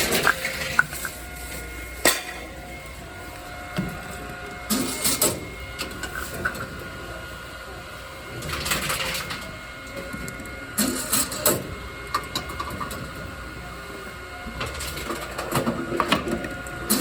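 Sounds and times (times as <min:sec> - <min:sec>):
plastic bottles clattering: 0:00.0 - 0:01.2
machine faint hum: 0:00.0 - 0:17.0.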